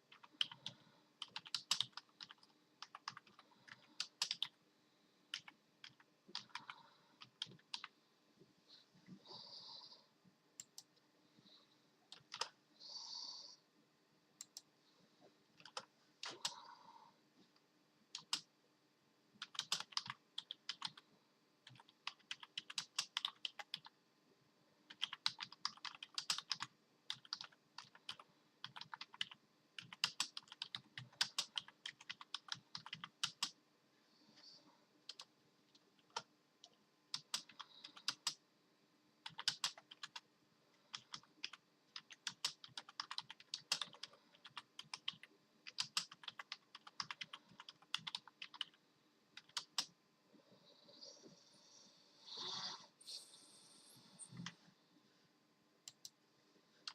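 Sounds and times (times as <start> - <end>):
typing on computer keyboard: 0.0 - 4.6, 5.3 - 7.9, 12.1 - 12.6, 15.6 - 16.6, 18.2 - 18.5, 19.4 - 21.0, 21.6 - 23.9, 24.9 - 33.6, 35.1 - 35.3, 36.0 - 38.4, 39.2 - 40.2, 40.9 - 48.8, 49.4 - 49.9.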